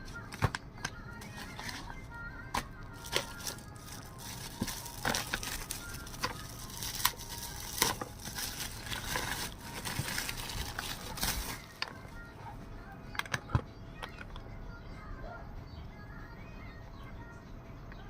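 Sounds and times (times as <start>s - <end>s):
plastic crinkling and rustling: 1.2s - 12.2s.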